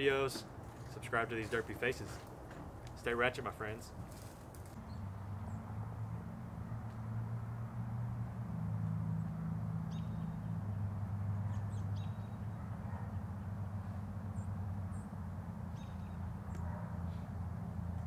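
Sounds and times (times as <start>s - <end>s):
birds chirping: 9.9s - 13.5s, 14.3s - 17.3s.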